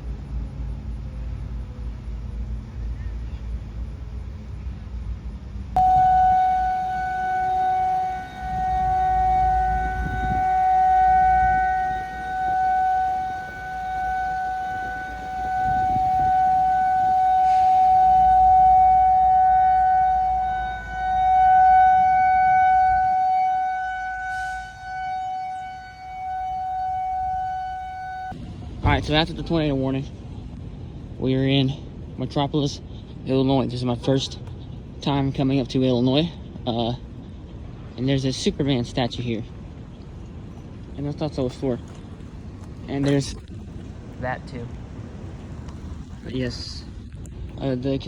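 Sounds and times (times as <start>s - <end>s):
rotating warning siren: 5.7s - 29.0s.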